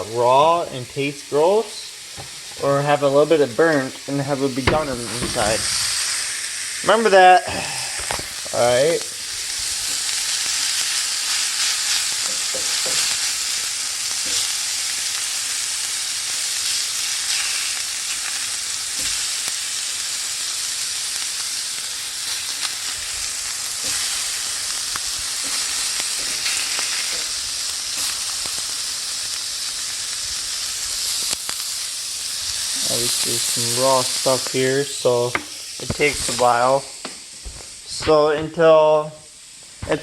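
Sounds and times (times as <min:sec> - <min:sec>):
patties sizzling in a skillet: 0:00.0 - 0:40.0
faint popping: 0:04.6 - 0:06.3.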